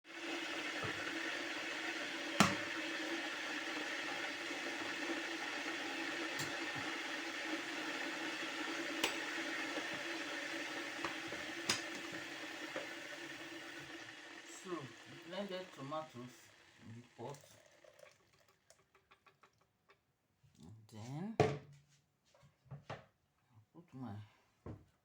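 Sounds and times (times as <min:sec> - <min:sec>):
kitchen background hiss: 0:00.1 - 0:18.6.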